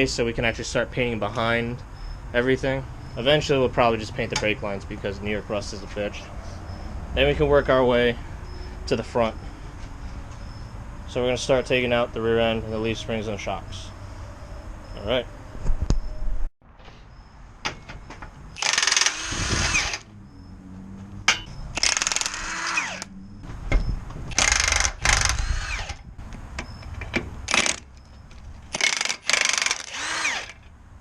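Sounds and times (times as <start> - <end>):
impact wrench running: 18.6 - 20.1, 21.8 - 23.1, 24.3 - 26.0, 27.5 - 27.9, 28.7 - 30.6.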